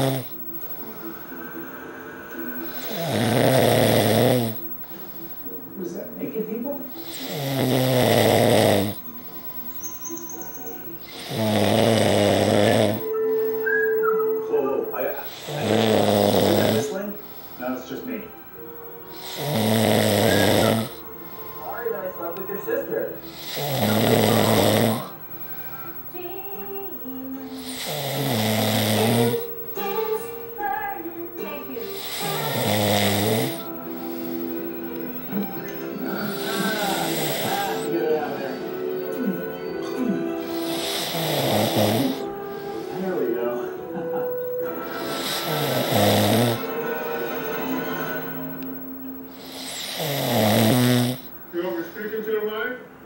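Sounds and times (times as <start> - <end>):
man snoring: 0.0 - 0.4, 2.6 - 4.8, 7.0 - 9.1, 11.0 - 13.1, 15.2 - 17.3, 19.1 - 21.1, 23.2 - 25.4, 27.5 - 29.7, 31.8 - 38.0, 40.2 - 43.0, 44.2 - 47.1, 48.0 - 51.3
background music: 0.0 - 51.5
steady whistling tone: 9.0 - 11.4, 12.5 - 15.7.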